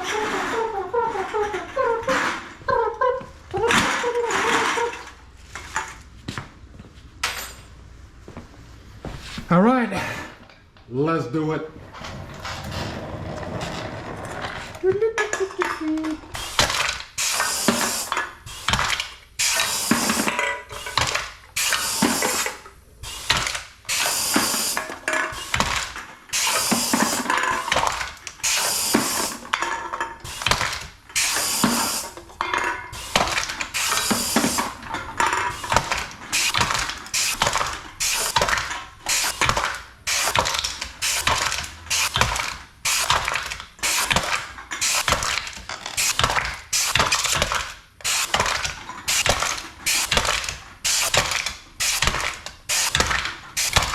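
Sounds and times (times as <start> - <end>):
can crusher crunching cans: 12.0 - 53.9
compressed air hissing: 17.2 - 18.8, 19.4 - 20.9, 21.5 - 25.7, 26.3 - 27.3, 28.4 - 29.5, 30.2 - 32.2, 32.9 - 34.8, 35.4 - 40.4, 41.0 - 42.2, 42.8 - 43.2, 43.8 - 44.2, 44.8 - 45.1, 46.0 - 47.4, 48.0 - 48.4, 49.1 - 50.2, 50.8 - 51.2, 51.8 - 52.1, 52.7 - 53.9.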